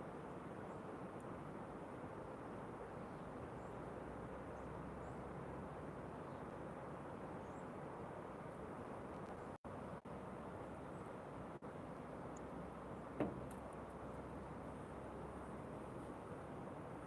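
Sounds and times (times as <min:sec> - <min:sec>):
low rushing storm wind: 0:00.0 - 0:17.0.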